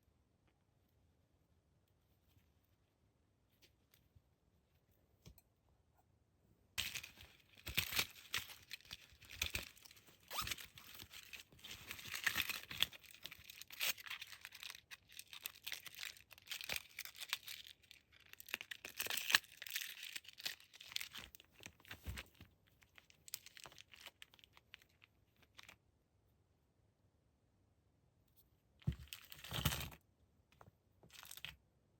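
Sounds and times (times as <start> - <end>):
packaging crinkling and tearing: 6.8 - 25.8, 28.9 - 30.0.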